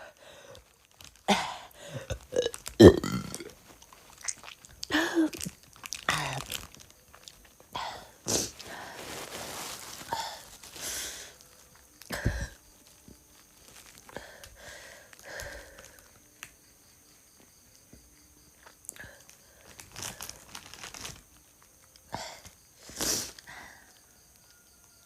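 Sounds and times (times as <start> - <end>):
breathy gasps: 0.0 - 0.7, 1.3 - 2.2, 14.1 - 16.0
woman coughing and retching: 1.3 - 3.5.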